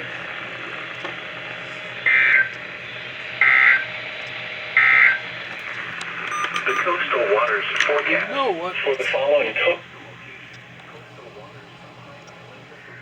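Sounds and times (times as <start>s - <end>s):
two-tone electronic data bursts: 3.4s - 4.0s, 4.8s - 5.3s, 6.3s - 7.0s.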